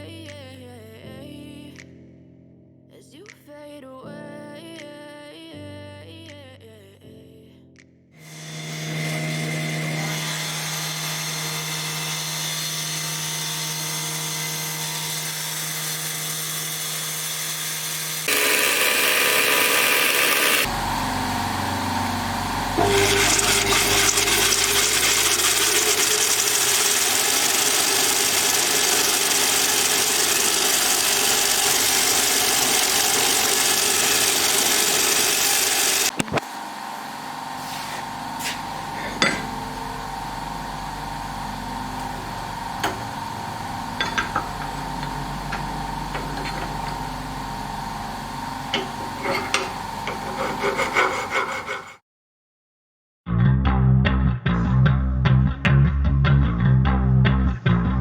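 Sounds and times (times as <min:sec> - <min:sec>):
harsh metal machining noise: 0:08.2 - 0:52.0
power tool running hum: 0:08.2 - 0:52.0.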